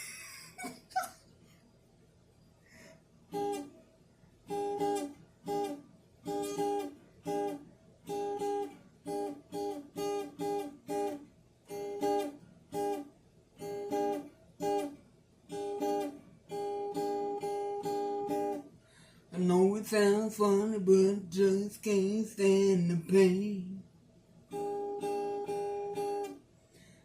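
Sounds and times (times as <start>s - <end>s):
choppy guitar strumming: 3.3s - 3.7s, 4.4s - 18.7s, 19.4s - 23.8s, 24.5s - 26.4s.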